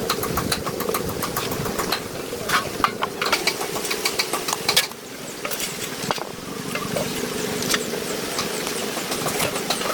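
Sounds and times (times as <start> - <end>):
sharp clicks and knocks: 0.0 - 7.0.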